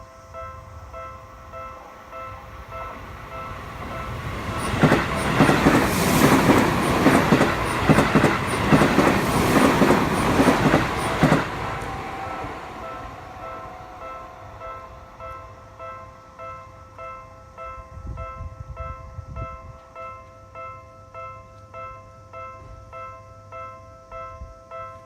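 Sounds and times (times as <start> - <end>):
crossing warning bell ringing: 0.0 - 25.0
train wheels clacking over rail joints: 4.4 - 12.0.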